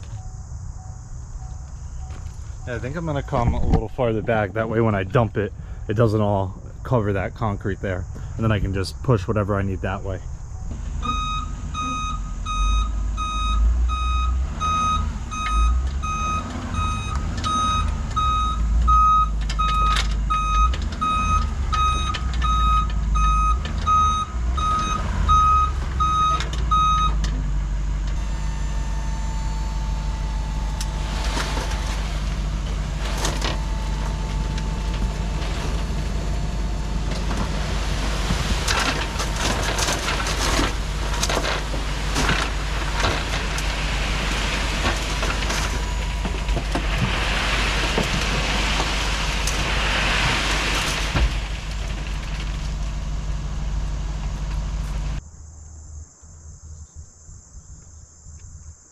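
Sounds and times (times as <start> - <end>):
reversing alarm beeping: 0.0 - 4.5, 10.5 - 27.2, 28.1 - 37.8
truck engine running: 0.0 - 55.2.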